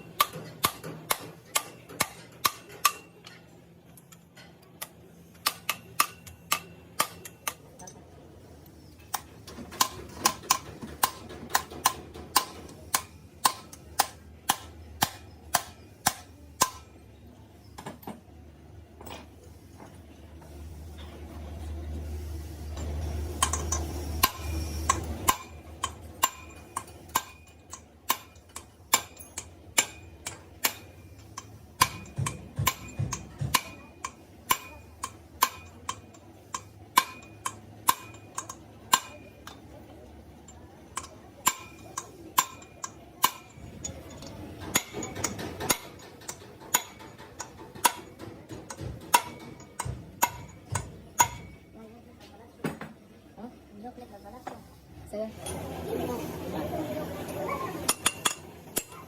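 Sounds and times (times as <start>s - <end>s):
light metal-on-metal taps: 22.8s - 39.6s, 40.4s - 51.6s.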